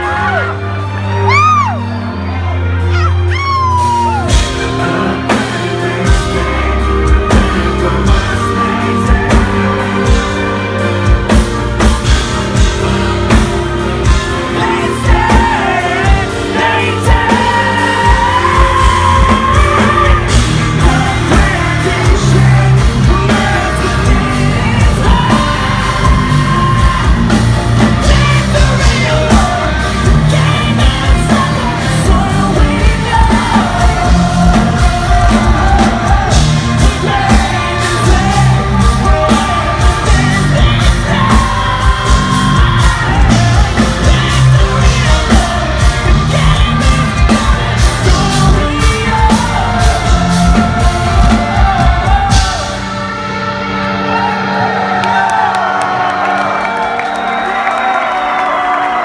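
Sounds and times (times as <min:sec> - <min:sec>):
metal band playing live: 0:00.0 - 0:59.0
man singing and shouting: 0:14.4 - 0:52.9.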